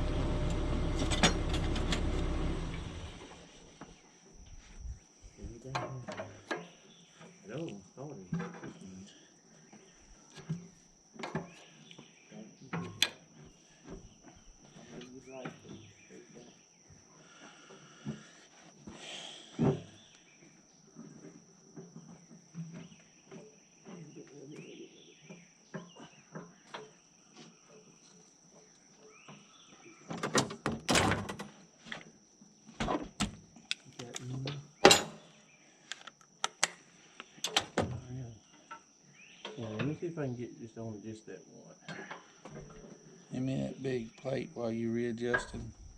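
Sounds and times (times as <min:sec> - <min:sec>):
knocks and clinks on machine: 0:00.9 - 0:02.3, 0:34.8 - 0:35.2
high insect drone: 0:01.2 - 0:45.9.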